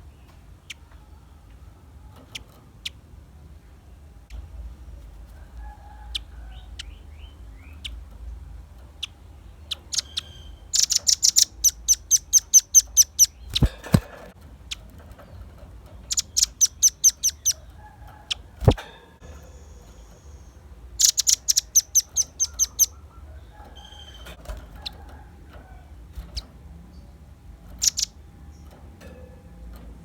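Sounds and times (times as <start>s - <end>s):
bird chips: 8.9s - 25.2s, 27.7s - 28.8s
bird trills: 9.0s - 25.0s, 27.8s - 28.7s
short thumps: 13.5s - 14.4s.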